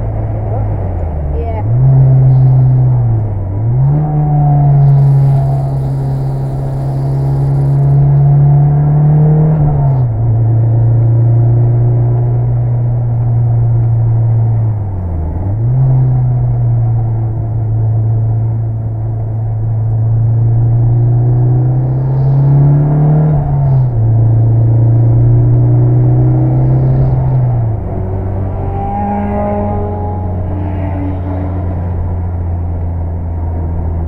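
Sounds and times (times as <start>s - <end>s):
turbocharged car engine running: 4.6s - 8.3s.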